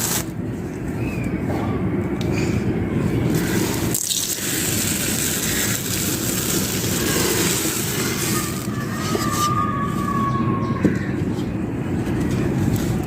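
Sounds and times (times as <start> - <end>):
sand-cement chunks crunching: 3.4 - 8.8.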